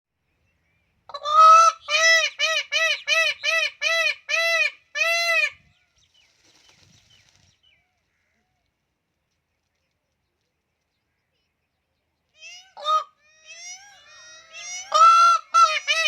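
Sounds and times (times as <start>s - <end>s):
peacock honking calls: 1.1s - 5.6s, 12.4s - 16.0s.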